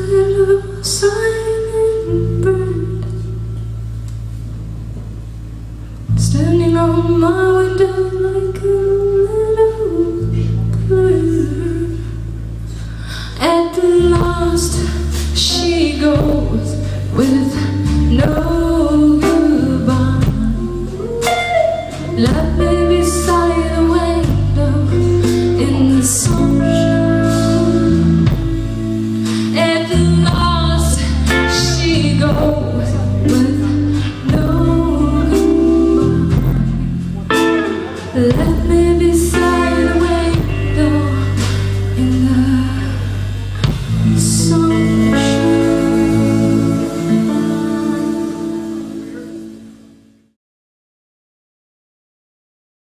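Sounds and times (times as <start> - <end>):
bass line: 0.0 - 50.4
guitar: 0.0 - 50.4
live band playing: 10.4 - 50.2.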